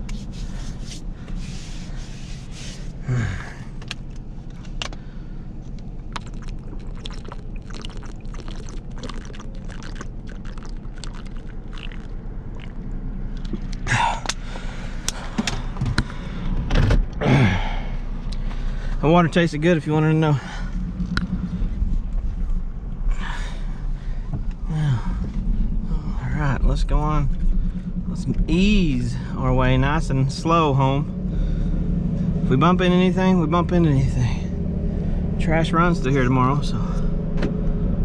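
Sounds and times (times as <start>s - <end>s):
vehicle engine idling: 0.0s - 38.0s
person gulping water: 6.0s - 14.4s.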